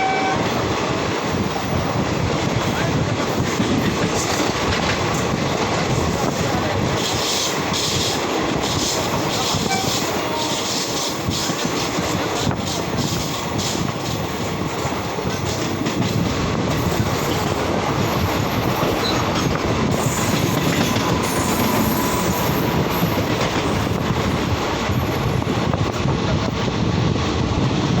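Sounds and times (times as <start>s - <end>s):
train wheels rumbling: 0.0s - 28.0s.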